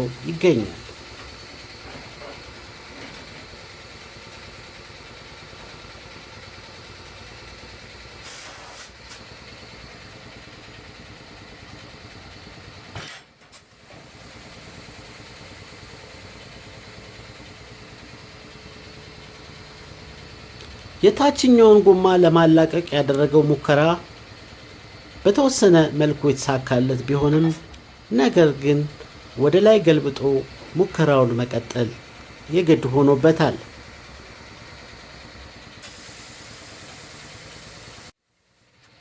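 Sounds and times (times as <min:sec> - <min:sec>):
motor running: 0:00.0 - 0:39.0
brief hiss: 0:08.2 - 0:09.3, 0:13.5 - 0:14.8, 0:35.8 - 0:38.2.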